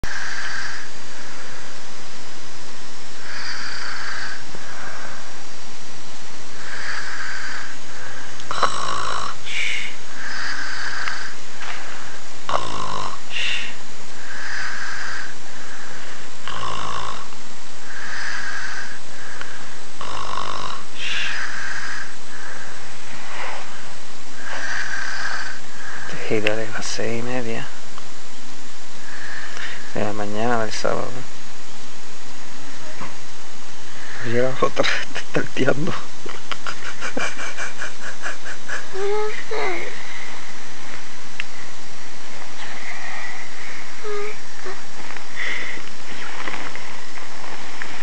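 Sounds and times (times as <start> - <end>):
person snoring: 0.0 - 2.0, 3.1 - 5.6, 6.4 - 27.8, 29.0 - 31.2, 33.8 - 48.0.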